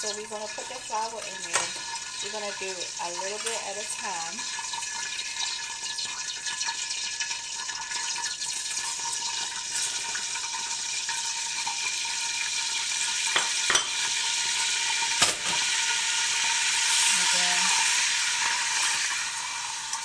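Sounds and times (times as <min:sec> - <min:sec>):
flour sizzling in hot oil: 0:00.0 - 0:20.0.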